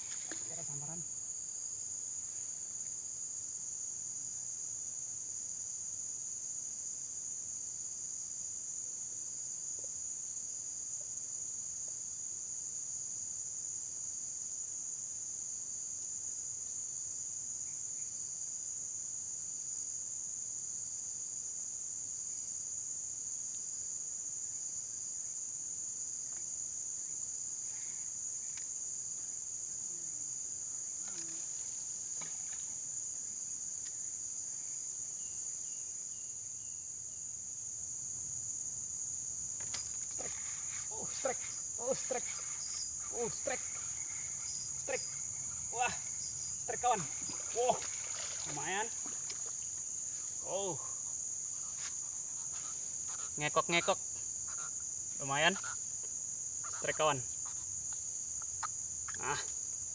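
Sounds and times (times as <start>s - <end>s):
insects chorus shrill drone: 0.0s - 6.9s, 22.1s - 59.9s.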